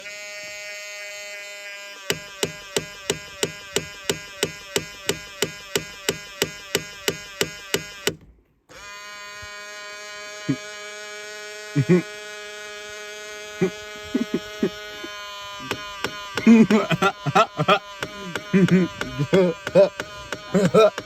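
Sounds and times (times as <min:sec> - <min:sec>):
motor whirring hum: 0:00.0 - 0:21.0
sharp clicking: 0:02.0 - 0:08.6.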